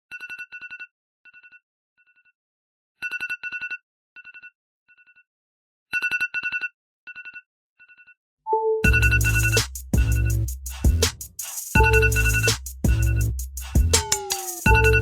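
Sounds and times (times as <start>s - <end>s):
telephone ringtone trilling: 14.2s - 15.0s.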